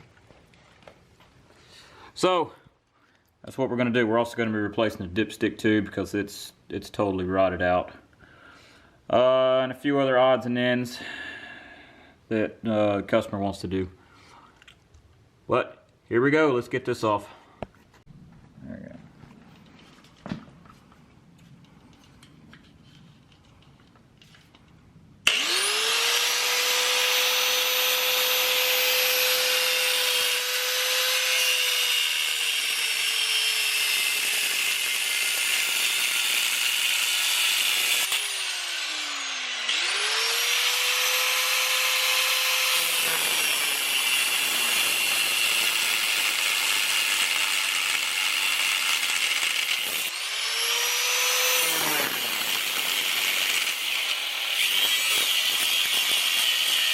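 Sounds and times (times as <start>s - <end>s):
cut-off wheel cutting metal: 25.2s - 56.9s.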